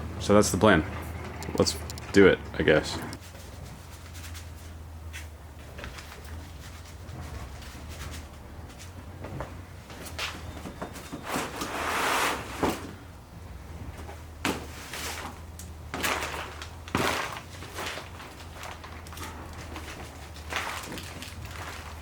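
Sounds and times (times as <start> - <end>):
steady low hum: 0.0 - 10.5
scraping sliding sound: 11.2 - 12.9.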